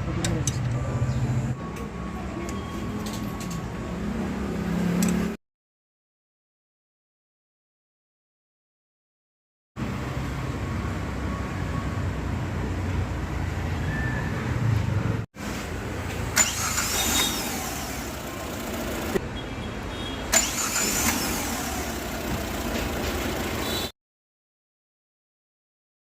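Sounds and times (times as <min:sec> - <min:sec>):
car engine idling: 0:16.3 - 0:19.2, 0:20.4 - 0:23.8.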